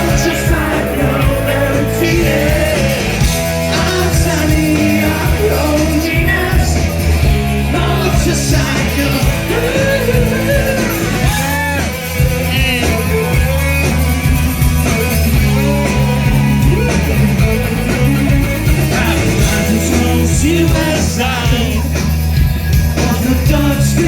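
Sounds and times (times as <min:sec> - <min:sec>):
man singing: 0:00.0 - 0:13.4, 0:18.8 - 0:22.1, 0:22.8 - 0:24.0
rock band playing: 0:00.0 - 0:24.0.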